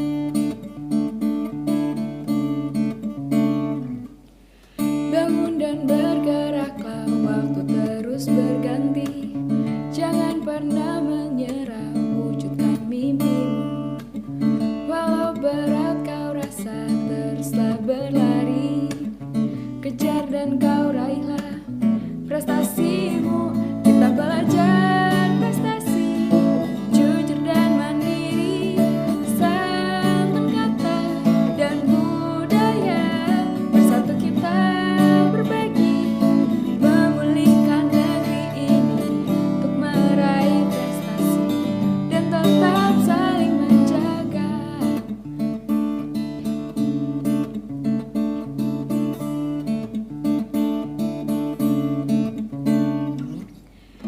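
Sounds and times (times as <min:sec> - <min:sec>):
strummed acoustic guitar music: 0:00.0 - 0:54.0
person singing: 0:05.1 - 0:13.7, 0:22.3 - 0:45.1.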